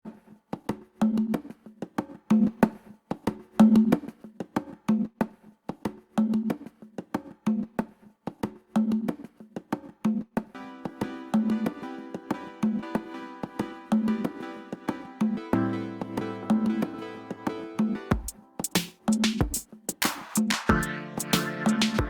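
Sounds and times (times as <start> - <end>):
wood-block-like percussion clicks: 18.1 - 22.0.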